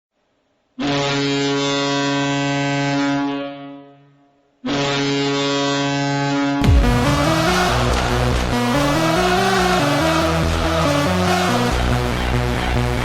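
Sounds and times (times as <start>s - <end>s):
arena goal horn blasts: 0.8s - 10.3s
loud music: 6.6s - 13.0s.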